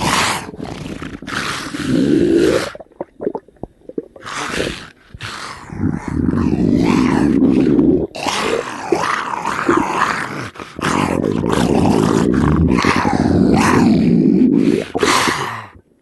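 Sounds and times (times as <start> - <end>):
cartoon stomach rumbling: 0.0 - 4.8, 5.8 - 9.0.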